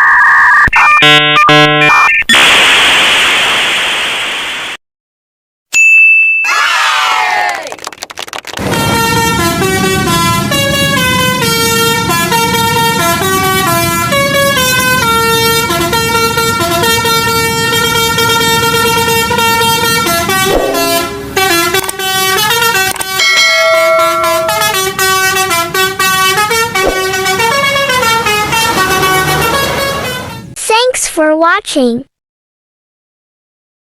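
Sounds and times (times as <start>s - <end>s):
multi-tone horn playing a tune: 8.6s - 30.4s.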